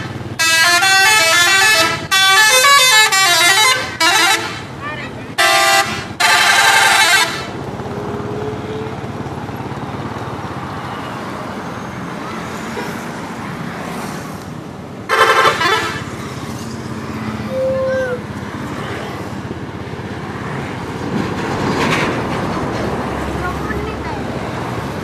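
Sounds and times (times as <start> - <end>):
musical air horn blast: 0.4 - 4.7, 5.4 - 7.5, 15.1 - 16.1.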